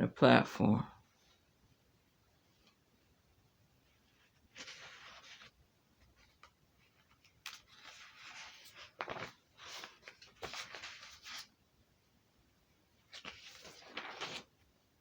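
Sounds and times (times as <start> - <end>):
scratchy rustling or scraping: 3.9 - 5.6, 6.2 - 11.5, 13.1 - 14.5.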